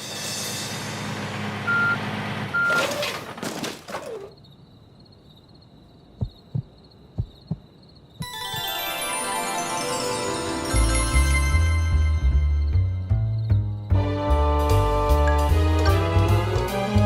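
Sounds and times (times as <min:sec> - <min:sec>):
short low thumps: 0:06.2 - 0:07.8.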